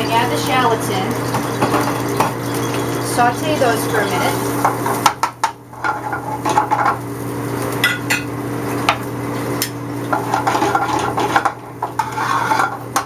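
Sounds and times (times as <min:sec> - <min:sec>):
shallots sauteing in a pan: 0:00.0 - 0:13.0
utensil scraping and clinking on pan: 0:10.1 - 0:13.0.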